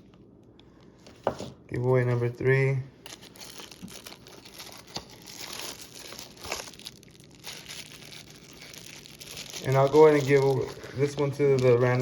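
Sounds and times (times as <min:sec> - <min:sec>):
packaging crinkling and rustling: 0:03.0 - 0:12.0.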